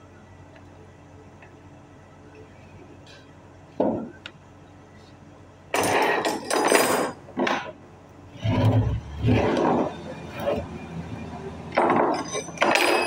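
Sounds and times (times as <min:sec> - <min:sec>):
metal clattering and scraping: 0:05.8 - 0:07.8, 0:08.4 - 0:10.8, 0:11.7 - 0:13.0
tools and metal parts handled: 0:05.8 - 0:07.8, 0:11.7 - 0:13.0.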